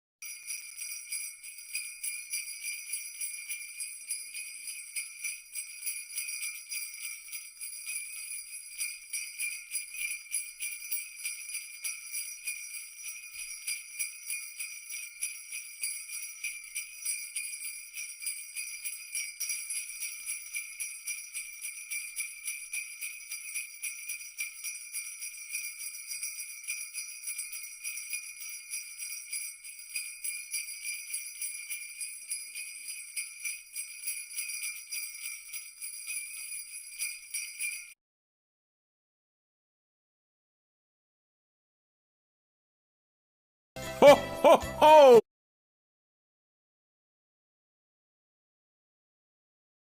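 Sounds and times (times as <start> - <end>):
jingle bells shaken: 0.2 - 38.0.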